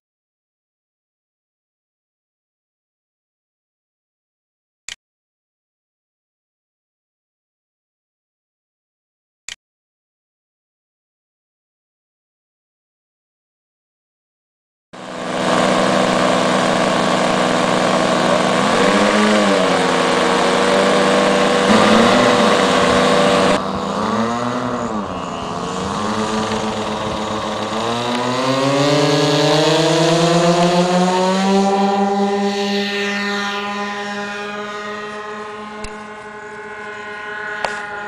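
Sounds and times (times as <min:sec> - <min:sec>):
model airplane engines running: 0:15.0 - 0:38.0.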